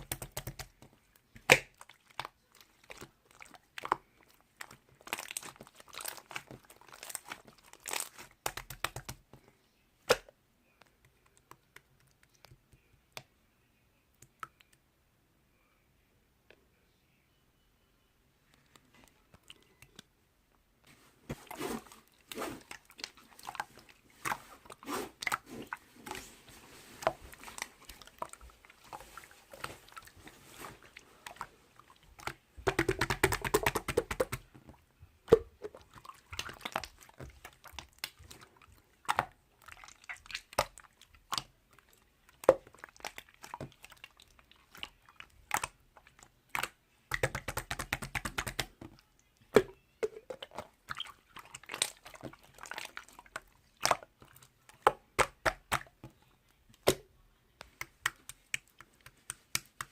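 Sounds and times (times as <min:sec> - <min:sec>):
slime wet clicks and pops: 0:01.4 - 0:02.3, 0:07.9 - 0:09.2, 0:46.5 - 0:48.7, 0:54.8 - 0:56.0.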